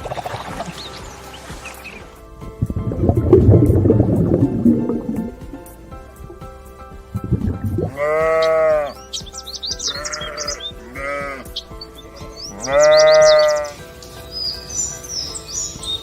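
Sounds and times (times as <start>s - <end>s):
small birds chirping: 0.0s - 2.2s, 7.6s - 16.0s
sheep bleating: 7.9s - 9.0s, 9.8s - 13.8s.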